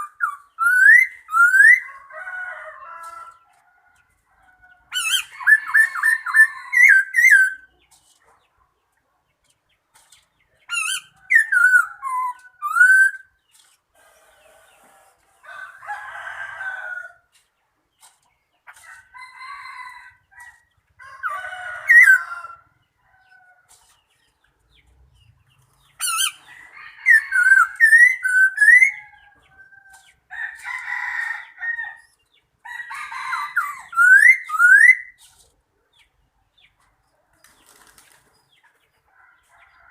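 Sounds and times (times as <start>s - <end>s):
high bird chirps: 0.0s - 1.9s, 10.0s - 14.9s, 24.0s - 29.3s, 33.6s - 35.3s.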